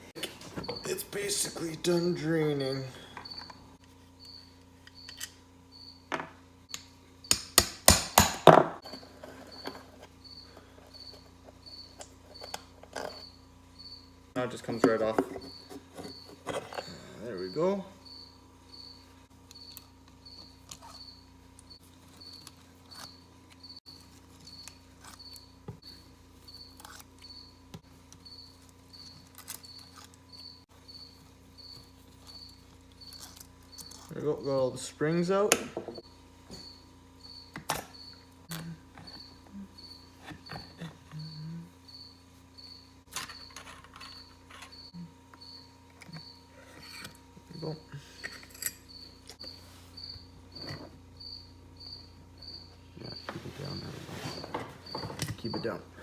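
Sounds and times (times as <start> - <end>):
cricket chirping: 0.2 - 7.5, 8.8 - 35.2, 35.9 - 56.0.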